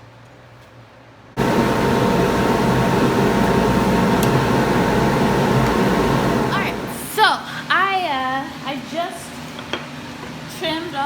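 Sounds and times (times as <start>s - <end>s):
bandsaw whirring: 1.4s - 7.2s.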